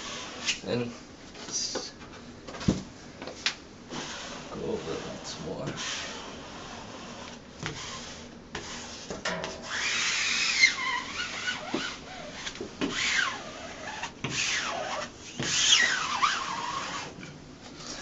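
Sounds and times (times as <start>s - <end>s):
squeegee rubbing and squeaking: 0.0s - 0.8s, 3.9s - 17.2s.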